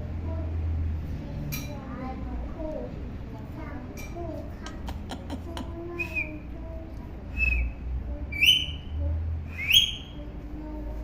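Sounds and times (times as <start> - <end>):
parrot whistled calls: 9.5 - 10.2.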